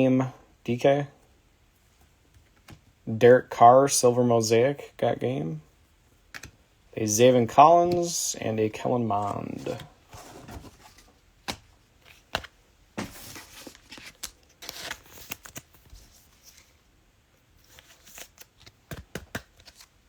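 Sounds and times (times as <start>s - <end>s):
trading cards being shuffled: 9.1s - 16.8s, 17.6s - 20.0s.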